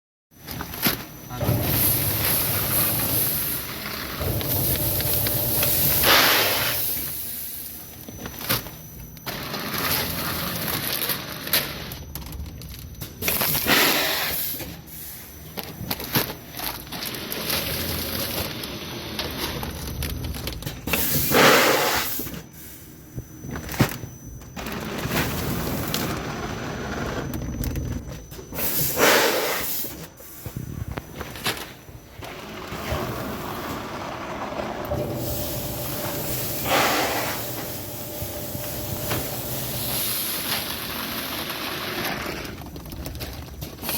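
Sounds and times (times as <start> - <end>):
packaging machine clicks and knocks: 37.5 - 43.9.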